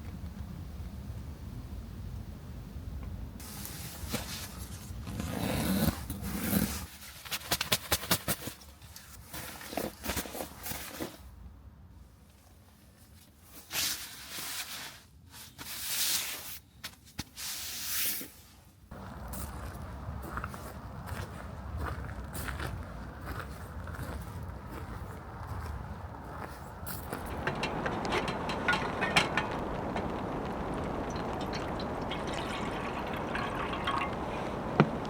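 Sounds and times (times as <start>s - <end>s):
rustling and handling noises: 3.4s - 11.3s, 12.2s - 18.6s.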